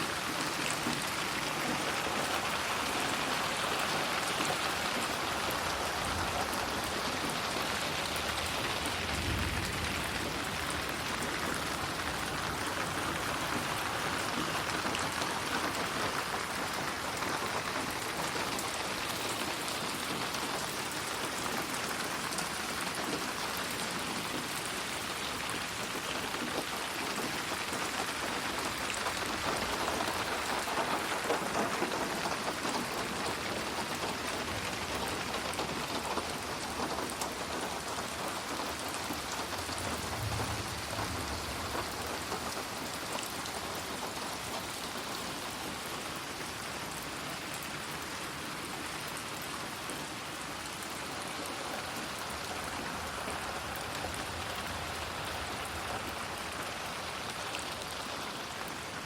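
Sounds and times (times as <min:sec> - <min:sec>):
steady rain falling: 0:00.0 - 0:59.0
low rumble: 0:39.7 - 0:42.2.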